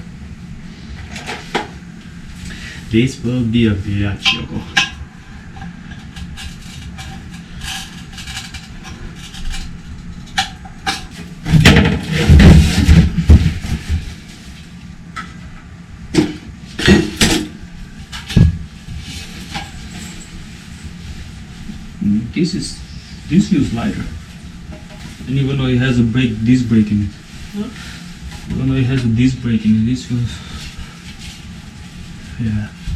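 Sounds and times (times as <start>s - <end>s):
metal tools clanking: 19.4s - 20.9s.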